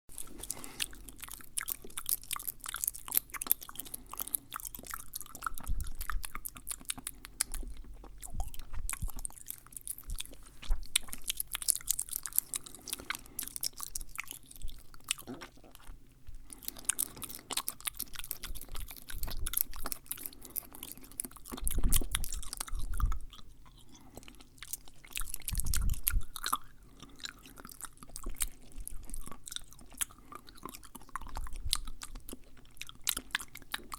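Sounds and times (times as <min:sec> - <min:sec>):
wet mouth clicks and smacks: 0:00.2 - 0:15.6, 0:16.7 - 0:23.3, 0:24.7 - 0:26.7.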